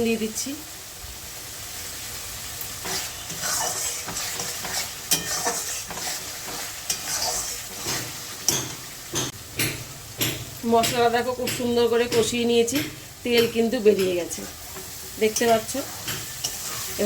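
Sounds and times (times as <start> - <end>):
oil sizzling: 0.0 - 17.0
spatula scraping a pan: 2.8 - 8.8, 12.9 - 17.0.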